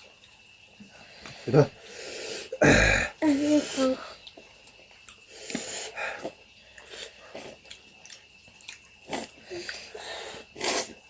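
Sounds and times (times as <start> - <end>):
chewing and wet mouth noises: 3.9 - 11.0.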